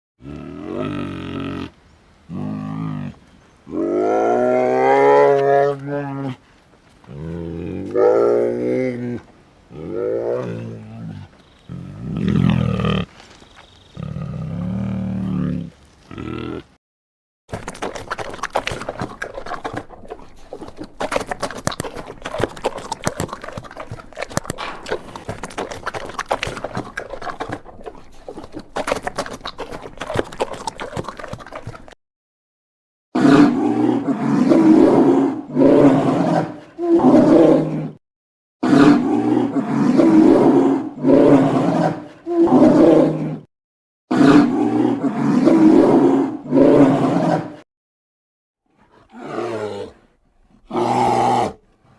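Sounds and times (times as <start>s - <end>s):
bear roaring: 0.2s - 6.4s, 7.1s - 13.1s, 14.0s - 16.7s, 33.2s - 38.0s, 38.6s - 43.5s, 44.1s - 47.6s, 48.9s - 50.1s, 50.7s - 51.6s
crackly recording noise: 0.6s - 14.3s, 17.5s - 32.0s.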